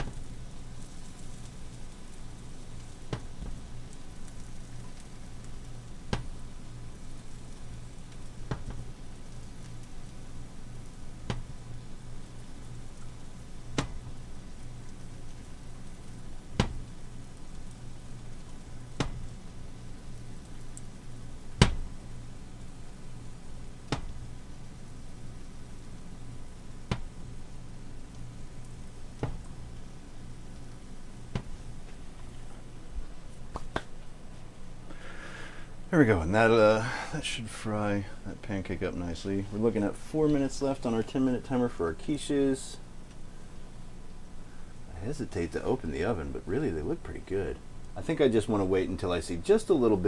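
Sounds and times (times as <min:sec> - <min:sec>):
batter sizzling in a pan: 0:00.0 - 0:32.1
steady low hum: 0:00.0 - 0:50.0.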